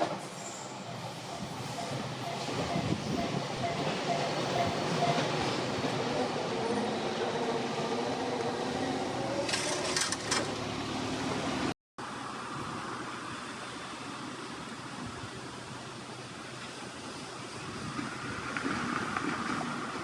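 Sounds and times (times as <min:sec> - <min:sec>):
train squeals and clicks: 0:00.0 - 0:10.6
train running: 0:00.0 - 0:11.7, 0:13.4 - 0:20.0
crossing warning alarm tones: 0:00.8 - 0:09.5.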